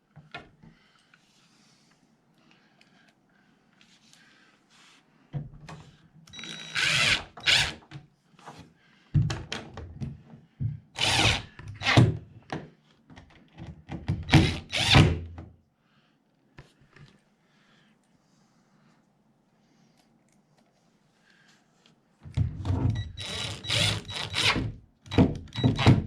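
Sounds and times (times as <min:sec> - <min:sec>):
power drill driving screws: 0:06.4 - 0:07.8, 0:11.0 - 0:12.0, 0:14.3 - 0:15.2, 0:23.1 - 0:26.0.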